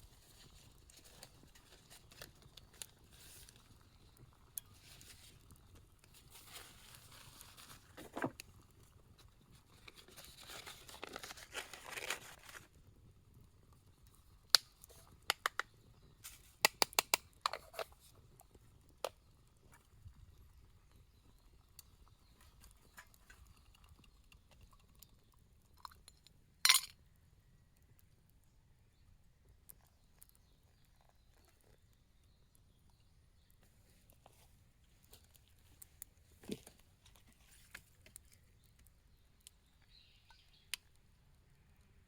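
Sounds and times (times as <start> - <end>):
scraping or rustling: 9.9 - 12.6
sharp clicks and taps: 16.7 - 17.6.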